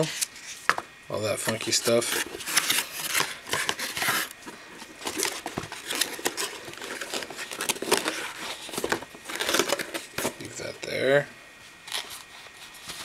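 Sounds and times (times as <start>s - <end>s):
paper crinkling: 1.4s - 10.7s.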